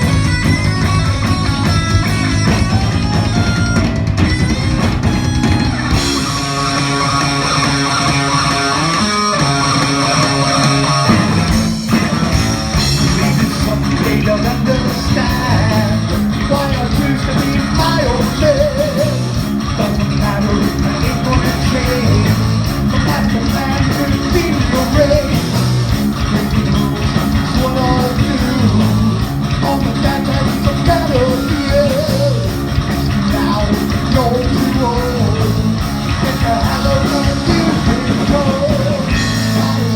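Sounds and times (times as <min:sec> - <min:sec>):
drums: 0:00.0 - 0:39.9
electric guitar: 0:00.0 - 0:39.9
person singing: 0:12.8 - 0:25.6, 0:27.4 - 0:32.6, 0:33.2 - 0:39.9.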